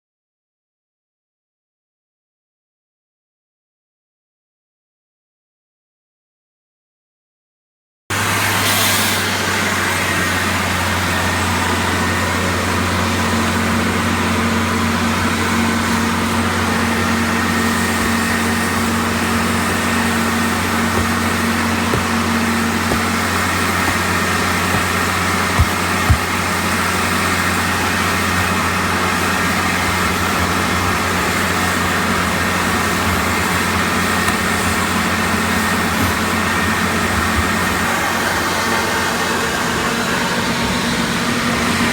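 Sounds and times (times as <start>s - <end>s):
vacuum pump drone: 8.1s - 41.9s
rushing hiss of air: 8.2s - 10.2s
short knocks: 19.2s - 26.6s.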